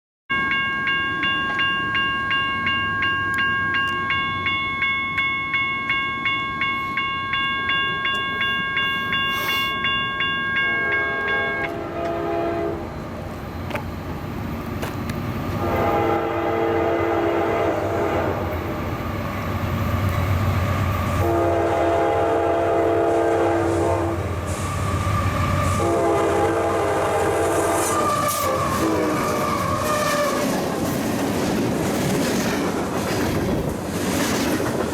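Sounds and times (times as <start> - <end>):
bell ringing: 0.3 - 11.7
train rumbling: 0.5 - 34.9
locomotive air horn blasts: 10.6 - 12.9, 15.6 - 18.6, 21.2 - 30.2
train wheel clatter: 24.5 - 34.9.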